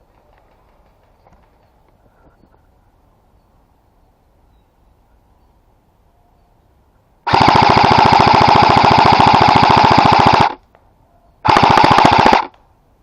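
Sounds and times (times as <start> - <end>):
airsoft rifle firing full auto: 7.3 - 10.6, 11.4 - 12.6.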